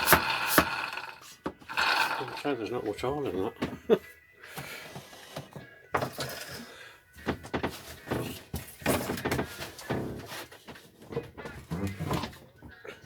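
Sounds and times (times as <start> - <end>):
knocks of lawn mower and tools: 0.0 - 3.9.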